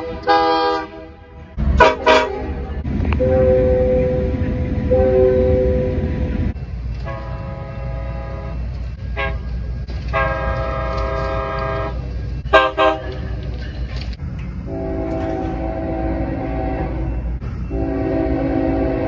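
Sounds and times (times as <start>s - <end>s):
locomotive air horn blasts: 0.0s - 6.1s, 7.0s - 8.6s, 9.2s - 9.5s, 10.1s - 13.2s, 14.7s - 19.0s
low rumble: 1.2s - 19.0s.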